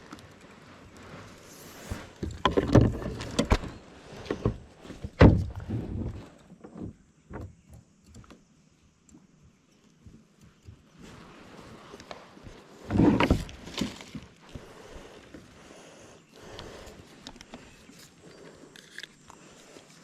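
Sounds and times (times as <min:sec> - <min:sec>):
knocks and thumps in a boat: 0:02.1 - 0:08.0, 0:12.8 - 0:15.5.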